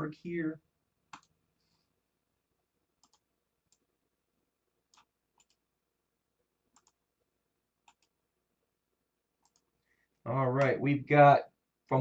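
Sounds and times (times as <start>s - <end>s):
faint computer mouse clicks: 4.9s - 5.6s, 6.7s - 7.0s, 9.4s - 9.7s.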